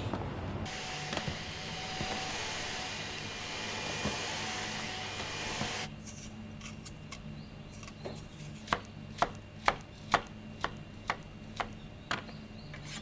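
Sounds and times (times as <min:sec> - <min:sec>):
knife chopping on cutting board: 0:07.8 - 0:12.2.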